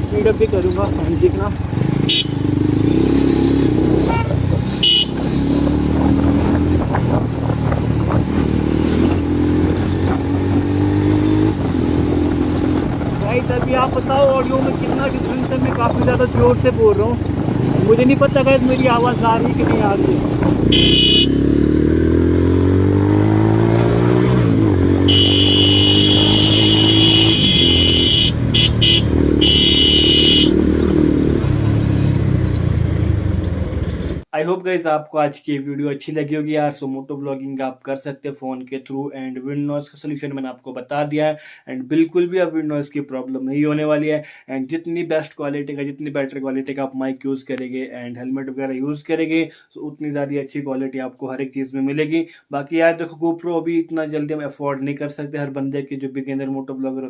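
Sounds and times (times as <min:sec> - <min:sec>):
motorcycle engine running: 0:00.0 - 0:02.9, 0:16.0 - 0:34.2
wind buffeting microphone: 0:06.2 - 0:08.5, 0:19.4 - 0:20.7.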